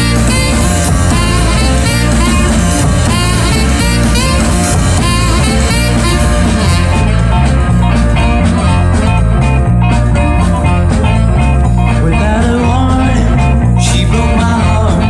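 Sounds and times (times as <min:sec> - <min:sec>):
electric guitar: 0:00.0 - 0:15.0
rhythm and blues band playing: 0:00.0 - 0:15.0.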